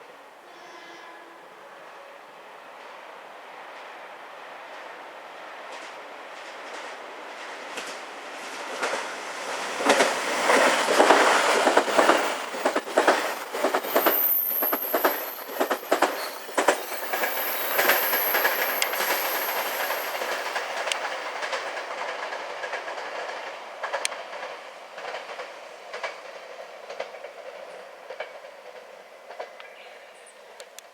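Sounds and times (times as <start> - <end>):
electric train passing: 0.1 - 29.6
wheels clicking over rail joints: 7.6 - 29.7.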